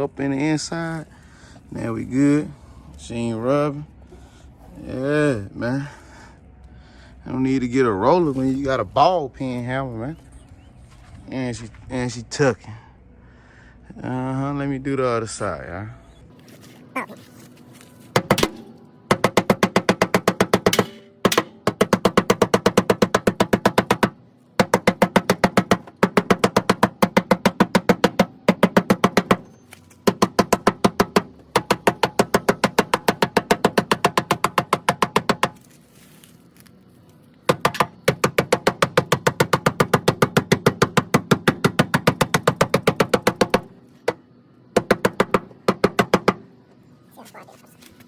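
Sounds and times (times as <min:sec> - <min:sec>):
hammer striking metal fender: 0:18.2 - 0:35.6, 0:37.5 - 0:44.2.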